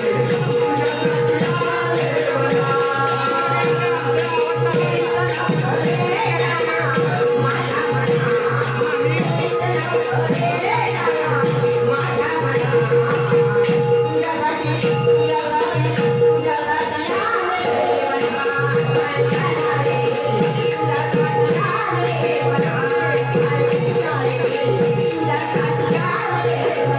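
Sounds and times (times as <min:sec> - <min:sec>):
steady drum beat: 0:00.0 - 0:15.3
jingling percussion: 0:00.0 - 0:26.9.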